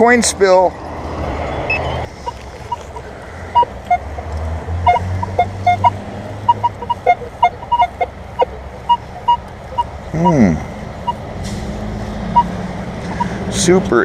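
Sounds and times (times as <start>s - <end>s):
metal detector beeps: 1.6s - 4.2s, 4.8s - 11.2s.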